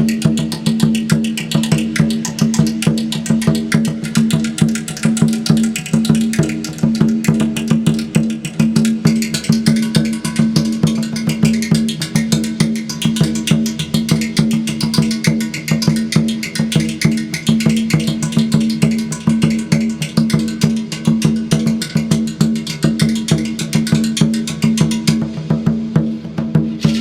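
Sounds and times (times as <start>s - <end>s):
fast percussive strokes: 0.0s - 27.0s
rattle-like sound: 26.8s - 27.0s.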